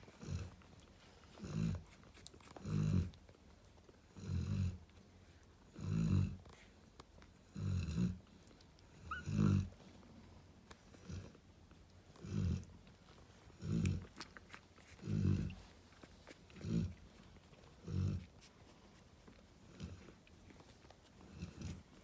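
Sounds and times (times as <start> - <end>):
dog snoring: 4.1 - 4.8, 5.7 - 6.4, 7.5 - 8.3, 13.6 - 14.1, 16.6 - 17.0.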